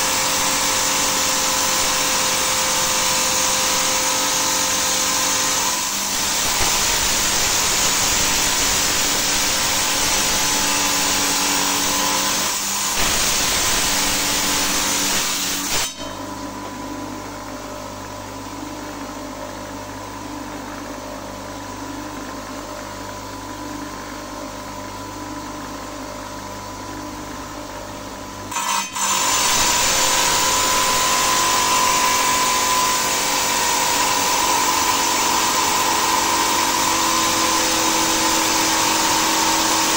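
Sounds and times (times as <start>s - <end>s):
saw blade grinding stone: 0.0s - 16.3s, 28.5s - 39.9s
steady motor hum: 29.2s - 39.9s.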